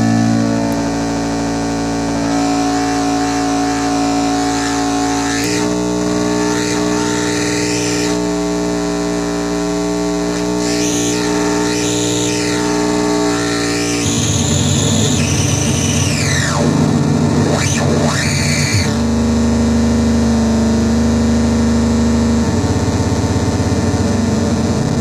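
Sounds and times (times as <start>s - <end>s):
synth drone chord: 0.0s - 20.1s
sweeping synth tones: 2.0s - 8.4s.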